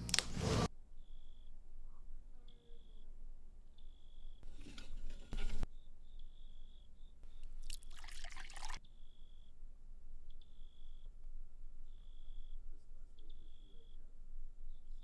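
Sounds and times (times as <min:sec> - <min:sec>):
liquid pouring: 0:07.6 - 0:08.8
faint high whine: 0:11.8 - 0:14.1.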